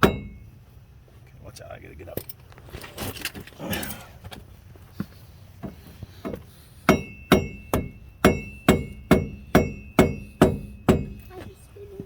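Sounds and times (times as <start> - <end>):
hammer striking metal hub: 0.0 - 0.5, 6.2 - 11.3.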